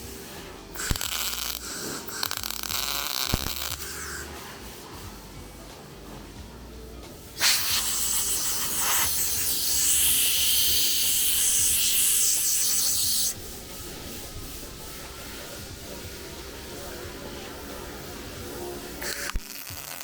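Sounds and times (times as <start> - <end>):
loud even hiss: 7.4 - 13.4.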